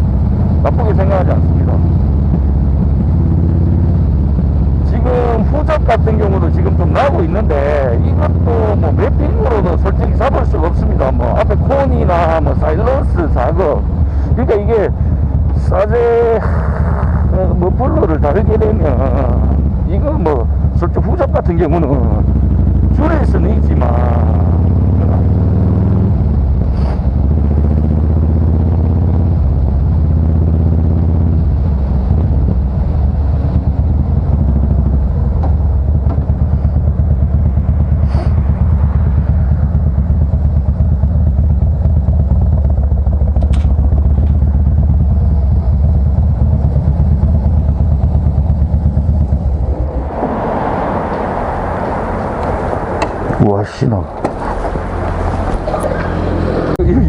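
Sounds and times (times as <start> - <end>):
rushing noise: 0.0 - 21.3, 43.8 - 56.8
motorcycle engine running: 0.0 - 57.0.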